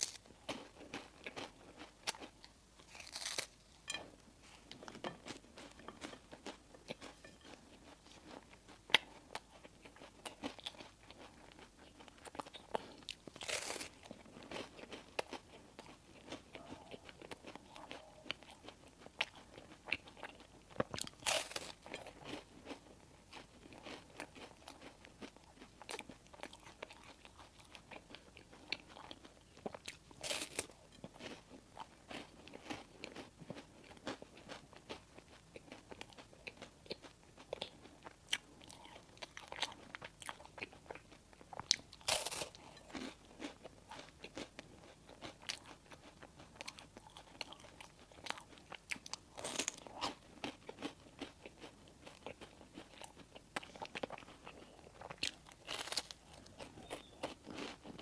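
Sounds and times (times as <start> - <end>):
biting and chewing bread: 0.0 - 58.0.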